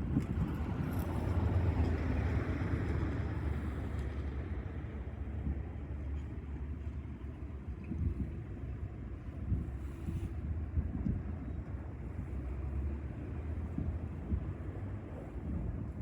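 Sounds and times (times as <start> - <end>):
wind buffeting microphone: 6.8 - 16.0.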